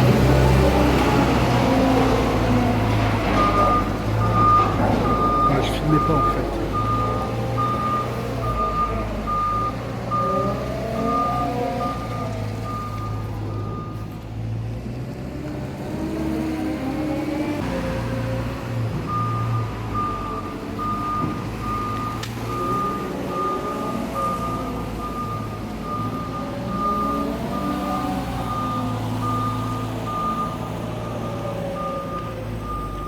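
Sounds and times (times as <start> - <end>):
heavy vehicle engine running: 0.0 - 33.0
reversing alarm beeping: 3.4 - 14.1, 19.1 - 33.0.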